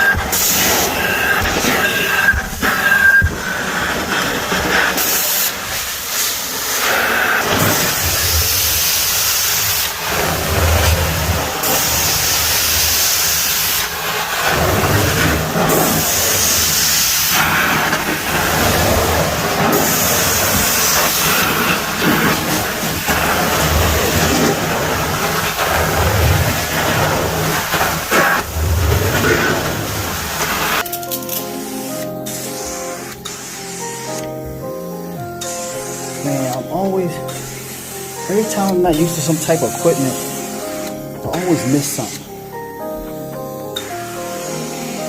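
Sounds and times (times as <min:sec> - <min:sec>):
vacuum suction rushing: 0:00.0 - 0:30.9
hissing spray: 0:00.0 - 0:45.0.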